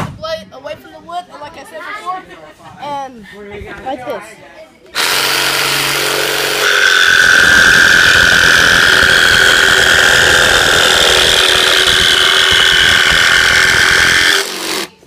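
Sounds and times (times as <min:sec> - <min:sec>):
jigsaw cutting wood: 0:05.0 - 0:15.0.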